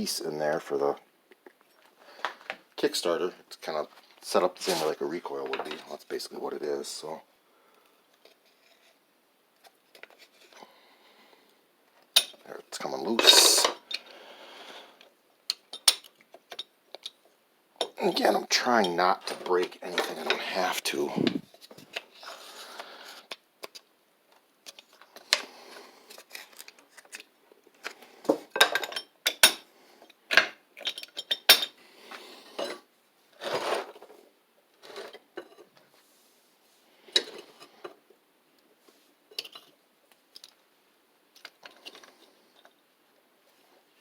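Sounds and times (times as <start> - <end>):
metal scrapes: 4.6 - 5.0
metal parts and tools clinking: 17.8 - 20.5, 27.8 - 31.8, 39.3 - 40.6.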